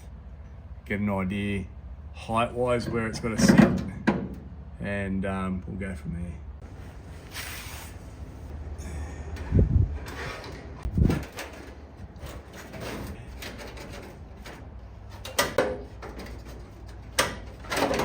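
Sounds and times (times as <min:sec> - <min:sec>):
dull low thumps: 0:09.4 - 0:10.0
sharp metal knocks and clatter: 0:11.0 - 0:18.0.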